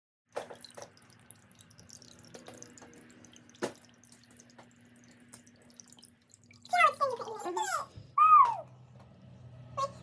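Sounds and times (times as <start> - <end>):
water trickling and dripping: 0.3 - 7.8.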